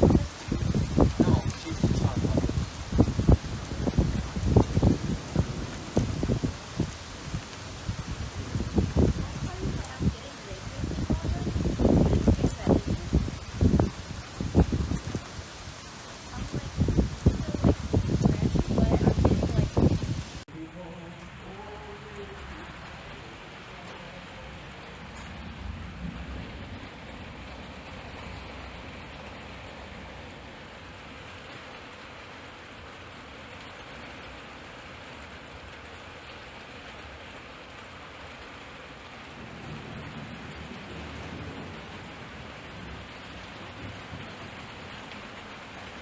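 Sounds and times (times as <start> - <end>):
thunder rumbles: 0.0 - 20.4, 24.5 - 28.6, 39.4 - 45.3
heavy rain falling: 0.0 - 46.0.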